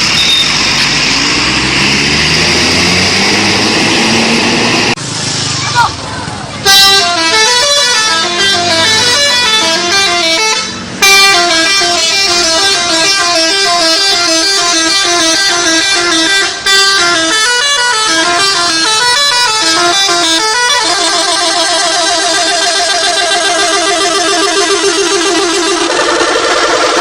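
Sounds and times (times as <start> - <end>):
multi-tone musical bus horn: 6.6 - 27.0.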